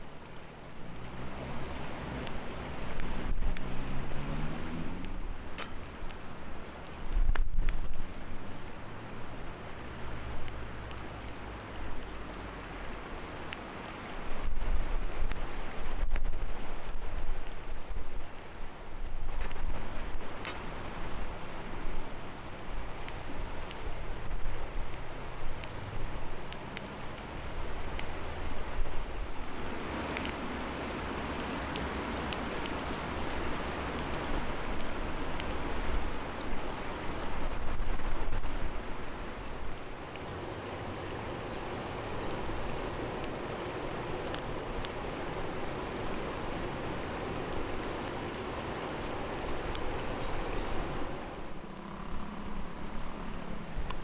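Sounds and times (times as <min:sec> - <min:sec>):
campfire crackling and popping: 0:00.0 - 0:51.9
steady rushing noise: 0:13.0 - 0:51.8.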